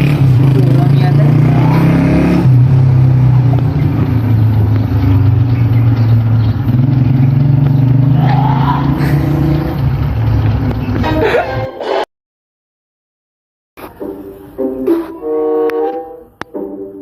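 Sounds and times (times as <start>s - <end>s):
vehicle engine humming: 0.0s - 11.7s.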